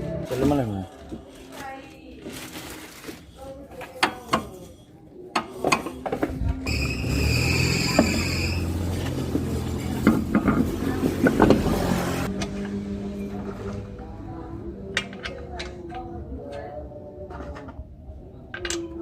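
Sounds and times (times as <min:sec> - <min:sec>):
car engine rumbling: 0:06.2 - 0:16.0.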